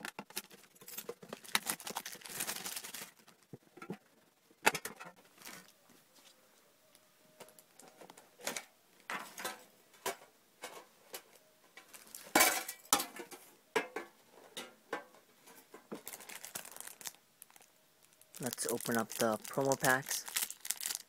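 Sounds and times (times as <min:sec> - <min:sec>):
metal tin clinks and knocks: 0:12.2 - 0:15.2.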